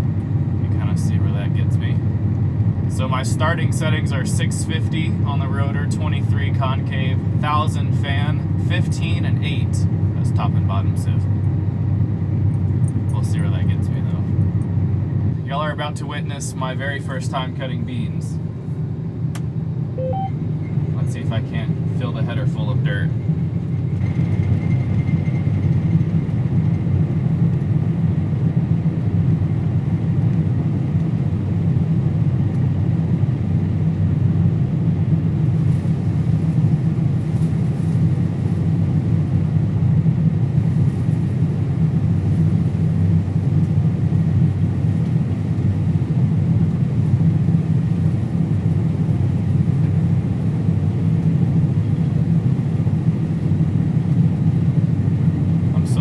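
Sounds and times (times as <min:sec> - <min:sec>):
combine harvester droning: 0:00.0 - 0:56.0.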